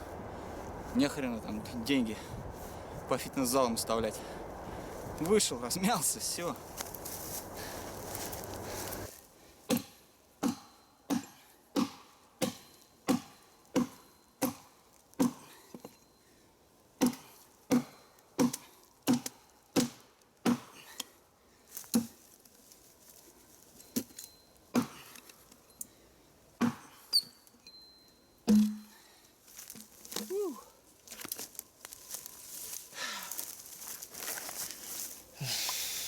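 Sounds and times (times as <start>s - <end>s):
axe chopping into tree trunk: 9.7s - 14.6s, 17.0s - 20.7s, 26.6s - 26.8s.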